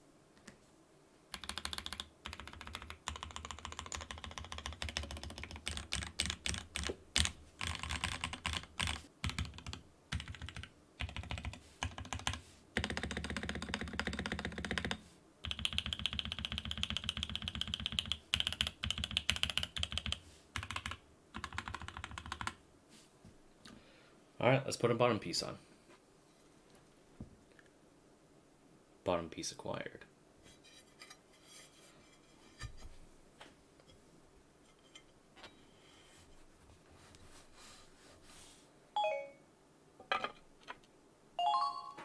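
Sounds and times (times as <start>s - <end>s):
mechanical keyboard typing: 1.3s - 22.6s.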